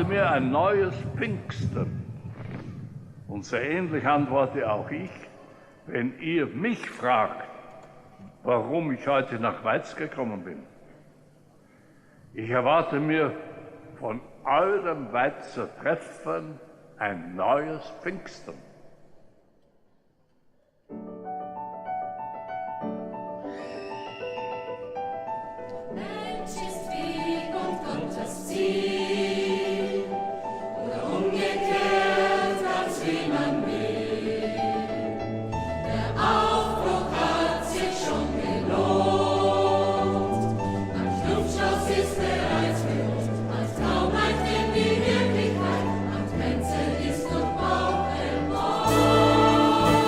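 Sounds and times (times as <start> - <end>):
choir singing sustained chords: 0.0 - 1.9, 25.0 - 50.0
musical accompaniment: 21.0 - 50.0.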